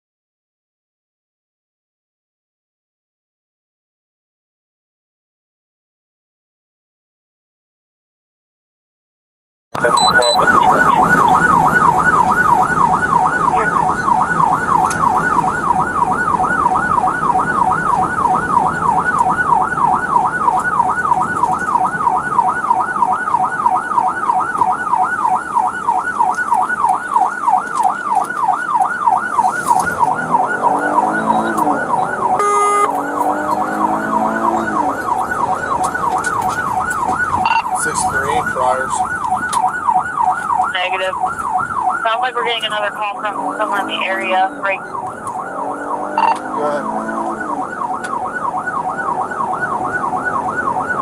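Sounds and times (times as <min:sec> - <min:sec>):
short beep: 0:09.8 - 0:11.4, 0:32.4 - 0:32.9, 0:37.4 - 0:37.8, 0:46.2 - 0:46.4
police siren yelping: 0:09.8 - 0:51.0.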